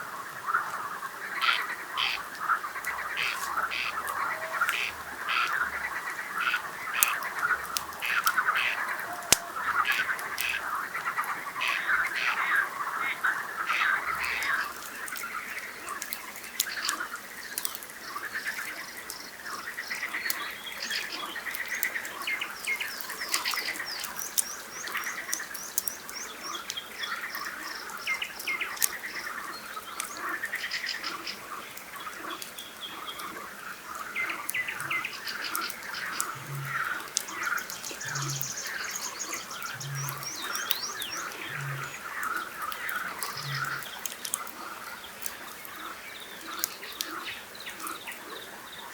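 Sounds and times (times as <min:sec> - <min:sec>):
frogs croaking: 0:00.0 - 0:48.9
campfire crackling: 0:00.4 - 0:48.9
nightingale singing: 0:33.9 - 0:44.3.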